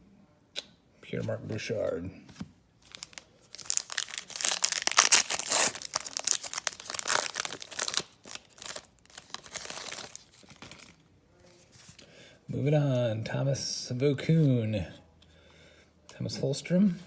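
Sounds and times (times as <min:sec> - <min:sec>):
plastic wrapper crinkling and tearing: 0:02.8 - 0:11.0.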